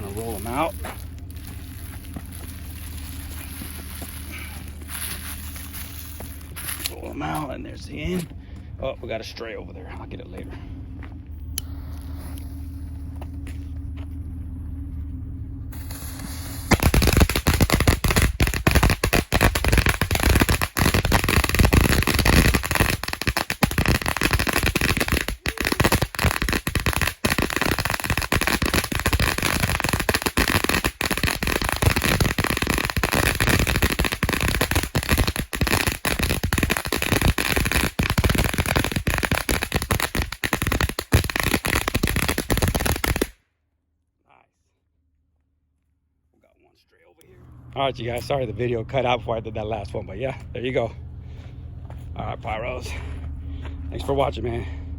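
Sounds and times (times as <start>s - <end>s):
firecrackers banging rapidly: 0.0s - 6.9s, 15.8s - 43.4s
low steady rumble: 0.0s - 42.6s, 43.4s - 54.9s.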